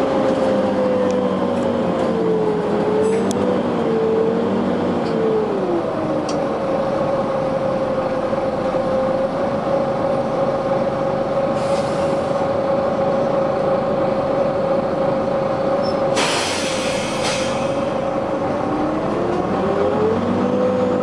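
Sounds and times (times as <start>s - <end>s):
bus engine and cooling fan whine: 0.0s - 21.0s
compressed air hissing: 16.2s - 17.9s.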